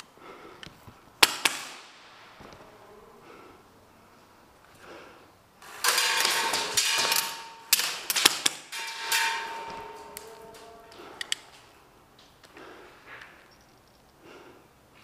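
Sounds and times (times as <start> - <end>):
airsoft gun cracks: 1.2 - 2.1, 5.9 - 8.8.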